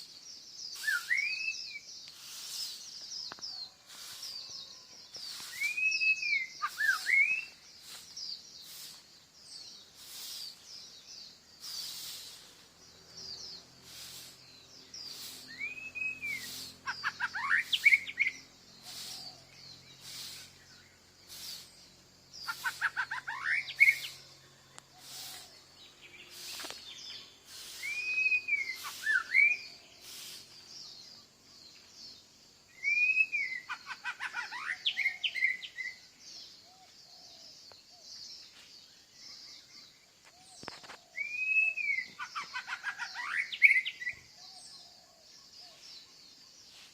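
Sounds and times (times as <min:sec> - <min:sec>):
rapid high-pitched bird chirping: 0:00.0 - 0:31.9, 0:32.8 - 0:36.4, 0:40.6 - 0:45.0
bird whistling phrase: 0:00.8 - 0:01.8, 0:05.5 - 0:07.6, 0:27.8 - 0:29.7, 0:32.8 - 0:33.8, 0:41.2 - 0:44.1.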